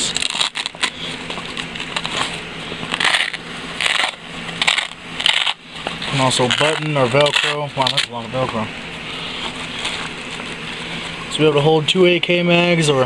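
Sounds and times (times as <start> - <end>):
velcro tearing open: 0.0 - 2.3, 2.9 - 8.1.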